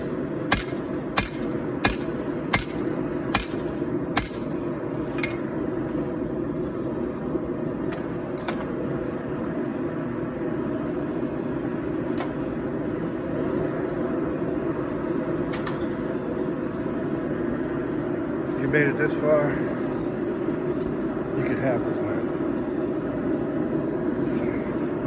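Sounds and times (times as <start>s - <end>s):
hammer blows on hot steel: 0.0s - 4.7s.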